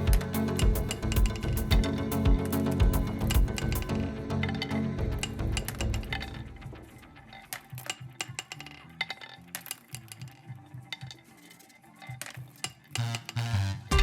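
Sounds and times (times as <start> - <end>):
quiet background music: 0.0 - 14.0
glass marbles clicking: 7.3 - 13.5.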